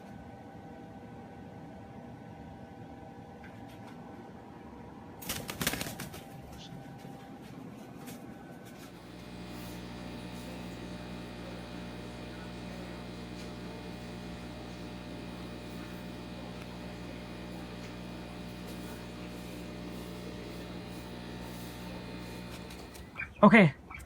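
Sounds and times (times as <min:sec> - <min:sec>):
low multi-tone hum: 0:06.2 - 0:24.0.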